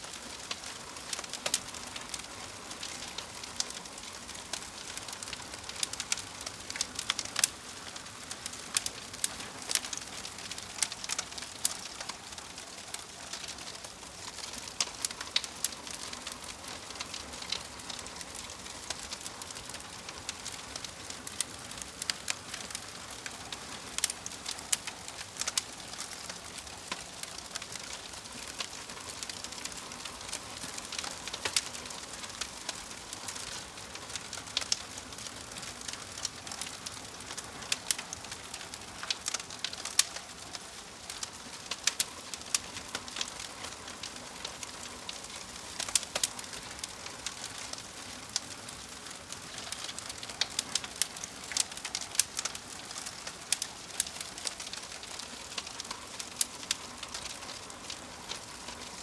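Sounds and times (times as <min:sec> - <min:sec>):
fireplace logs hissing and crackling: 0:00.0 - 0:59.0.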